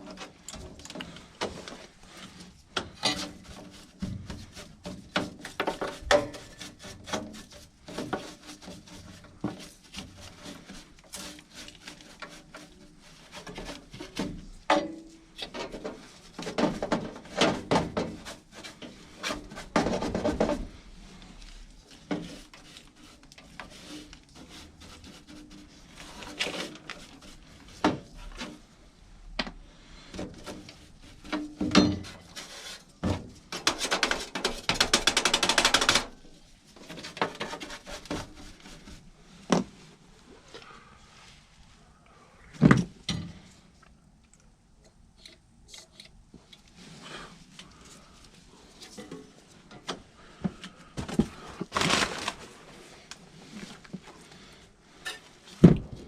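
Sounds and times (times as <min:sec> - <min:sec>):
parts rubbing and scraping: 0:00.0 - 0:29.0, 0:30.1 - 0:41.7, 0:45.2 - 0:55.6.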